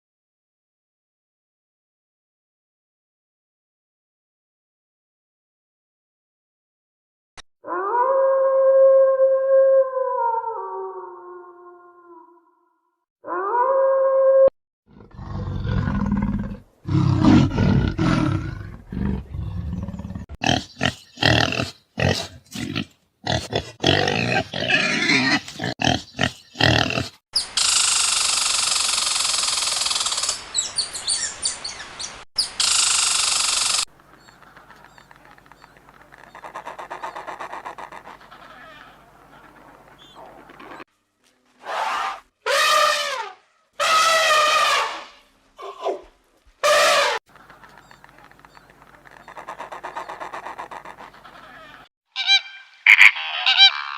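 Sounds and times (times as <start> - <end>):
deep growling roars: 14.9 - 20.4
rapid choppy animal calls: 27.4 - 30.4, 32.4 - 40.8, 46.8 - 53.9.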